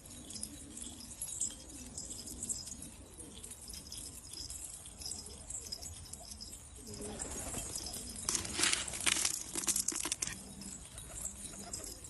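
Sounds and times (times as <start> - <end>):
pigeons cooing: 0.0 - 12.0
light scratching: 8.0 - 11.2.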